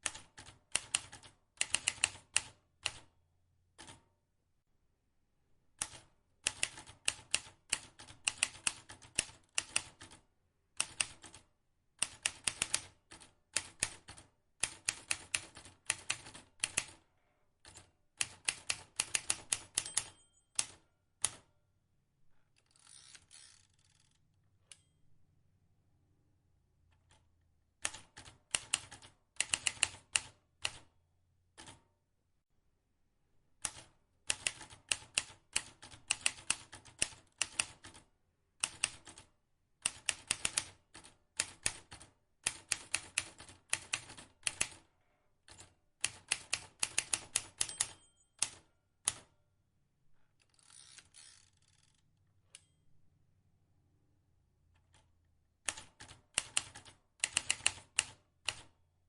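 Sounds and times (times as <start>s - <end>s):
manual typewriter key strikes: 18.3s - 21.4s, 46.1s - 49.2s
typewriter carriage scraping sweep: 50.5s - 51.7s.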